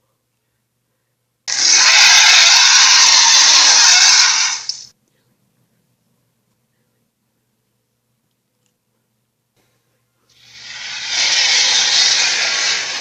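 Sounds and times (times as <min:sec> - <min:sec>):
loud harsh hiss: 0:01.5 - 0:04.9, 0:10.3 - 0:13.0.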